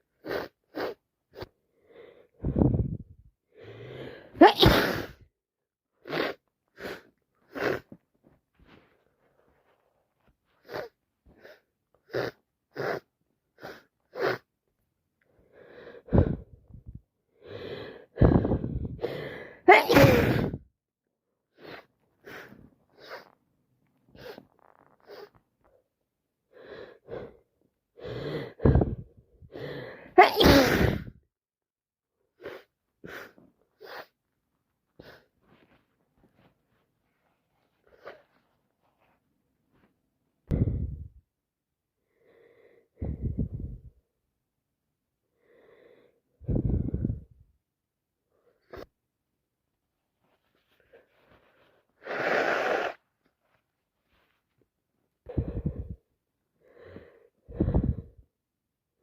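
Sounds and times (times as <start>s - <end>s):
woman breathing: 1.4s - 5.2s, 15.3s - 20.6s, 28.0s - 30.2s, 40.5s - 41.2s, 42.0s - 44.0s, 45.4s - 47.4s, 55.2s - 58.3s
woman sneezing: 4.4s - 5.2s, 19.6s - 20.6s, 30.1s - 31.2s.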